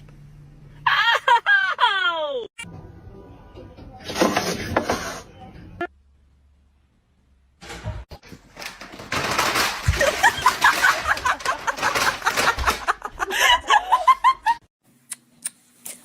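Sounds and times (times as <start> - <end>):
person laughing hard: 0.9 - 2.4, 9.9 - 14.7.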